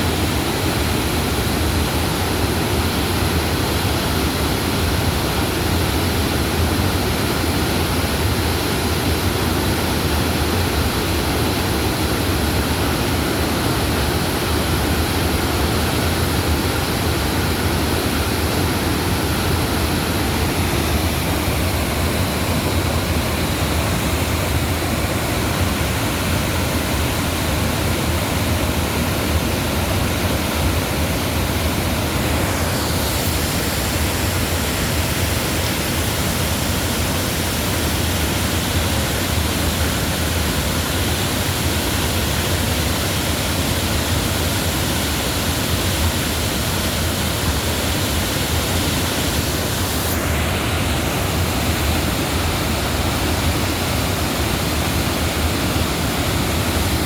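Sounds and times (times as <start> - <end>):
waterfall roaring: 0.0 - 57.0.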